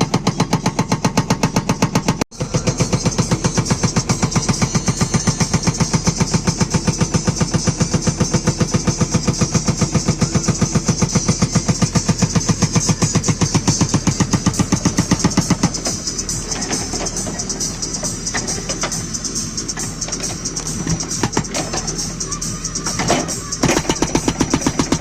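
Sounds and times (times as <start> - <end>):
diesel engine running: 0.0 - 25.0
hydraulic breaker hammering: 0.0 - 25.0.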